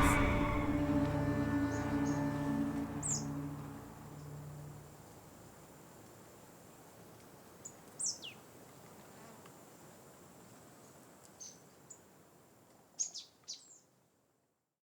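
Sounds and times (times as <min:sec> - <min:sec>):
high downward chirps: 0:00.0 - 0:04.8
insects buzzing: 0:00.0 - 0:05.6.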